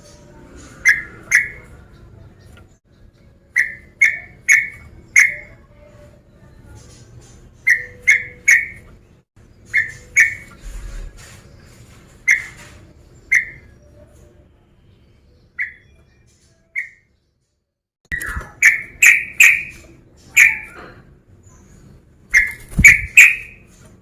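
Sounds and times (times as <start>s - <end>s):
bird whistled notes: 7.6s - 8.9s, 9.6s - 10.8s, 18.1s - 20.9s, 22.4s - 23.7s.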